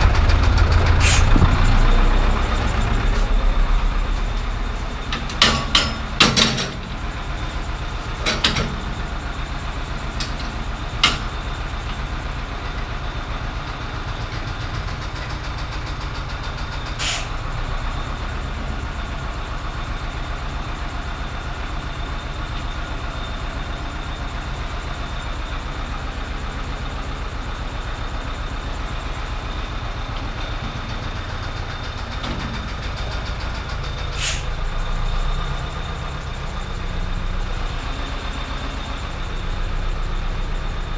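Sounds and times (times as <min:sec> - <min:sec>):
sharp knocks or rattles: 0:00.0 - 0:07.3, 0:07.9 - 0:09.4, 0:10.1 - 0:11.6
tractor diesel engine running: 0:00.0 - 0:40.9.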